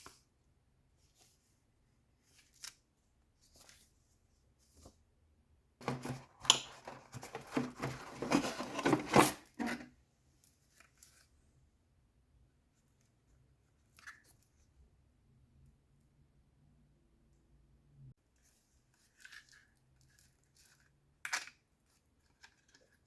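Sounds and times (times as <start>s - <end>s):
packaging crinkling and rustling: 5.8s - 9.9s.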